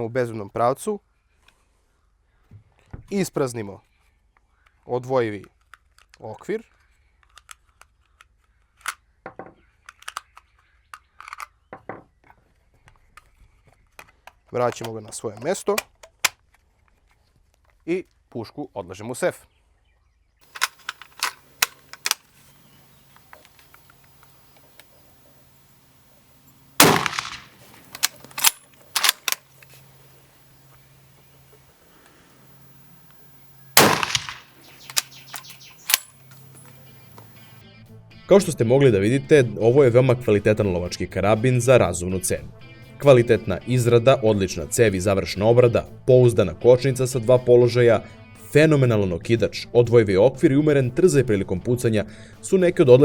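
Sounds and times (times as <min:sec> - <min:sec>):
cartridges clicking from magazine: 0:11.2 - 0:11.5, 0:20.4 - 0:37.6.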